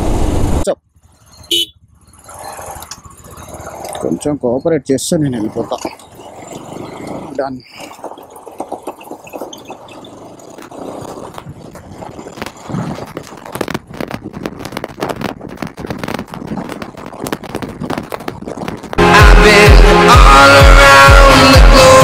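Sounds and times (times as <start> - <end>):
wind buffeting microphone: 6.2 - 19.0.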